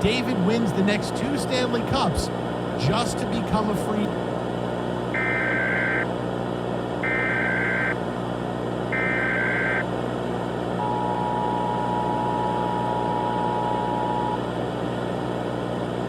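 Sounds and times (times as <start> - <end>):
background hum: 0.0 - 16.0
two-tone attention signal: 7.0 - 8.0, 9.0 - 9.8, 10.8 - 14.4.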